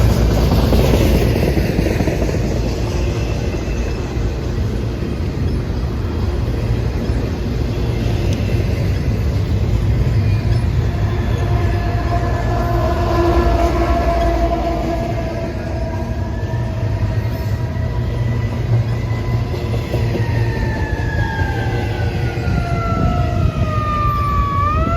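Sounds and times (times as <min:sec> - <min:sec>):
train passing roar: 0:00.0 - 0:24.9
wind rumble on microphone: 0:20.5 - 0:24.9.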